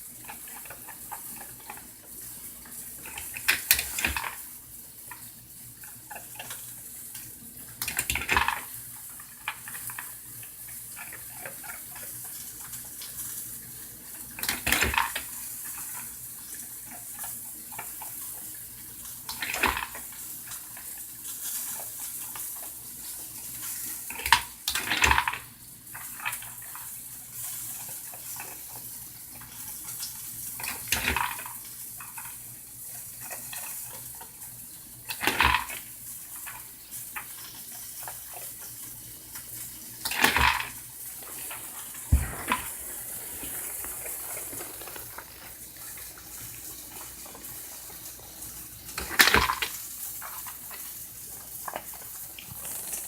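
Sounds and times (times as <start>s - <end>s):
faint hiss: 40.8s - 48.7s
water splashing: 40.9s - 47.5s.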